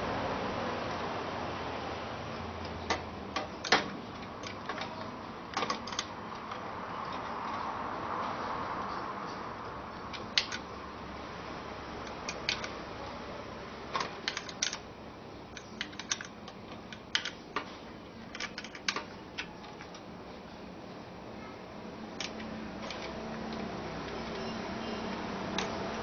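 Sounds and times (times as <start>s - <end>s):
small parts clicking and tapping: 2.6s - 7.7s, 10.1s - 10.7s, 12.0s - 12.8s, 13.9s - 14.9s, 15.5s - 20.1s, 22.1s - 24.5s, 25.1s - 26.0s.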